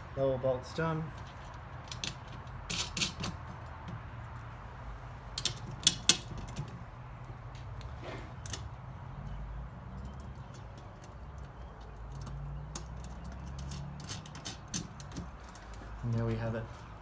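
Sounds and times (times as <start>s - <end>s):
metallic clicks and taps: 10.0s - 15.4s.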